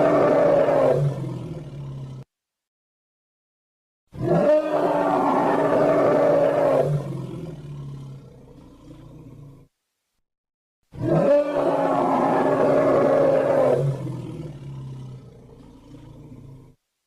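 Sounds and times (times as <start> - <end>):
animated scream: 0.0 - 1.1, 4.3 - 7.0, 11.1 - 14.1.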